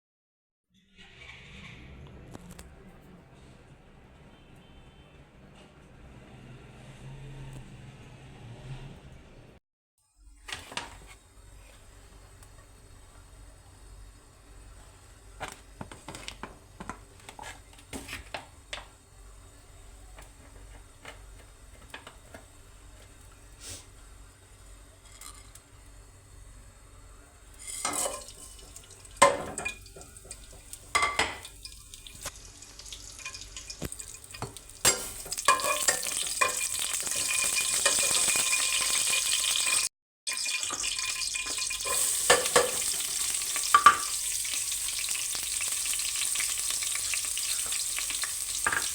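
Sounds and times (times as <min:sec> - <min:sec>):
food sizzling in hot oil: 0:27.5 - 0:48.9
pan clattering: 0:27.6 - 0:31.8, 0:33.2 - 0:39.9, 0:40.5 - 0:44.2, 0:48.6 - 0:48.9
kitchen utensils clinking: 0:27.6 - 0:32.3, 0:33.2 - 0:44.2, 0:48.6 - 0:48.9.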